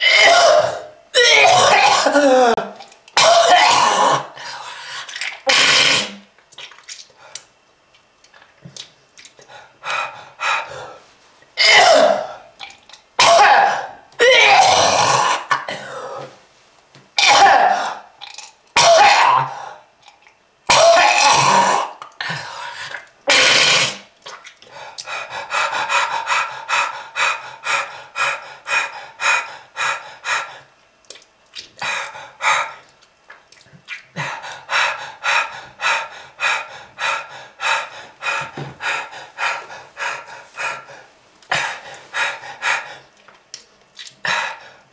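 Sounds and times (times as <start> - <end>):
person coughing harshly: 0.0 - 4.3, 11.6 - 12.4, 13.2 - 16.3, 17.2 - 18.0, 18.8 - 19.6, 20.7 - 21.9.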